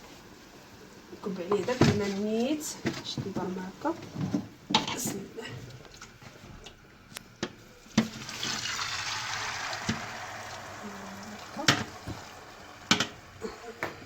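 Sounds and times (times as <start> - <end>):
water pouring from pot: 7.8 - 13.4
pot knocking on dish: 11.6 - 12.3, 12.9 - 13.2.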